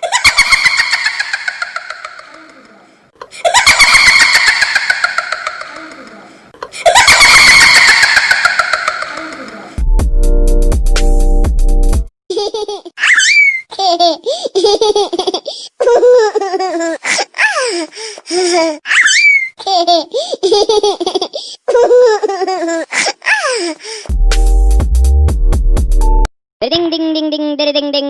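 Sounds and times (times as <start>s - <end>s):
baby laughing: 0.0s - 9.8s, 12.3s - 23.7s
bass-heavy electronic music: 9.8s - 12.1s, 24.1s - 26.3s.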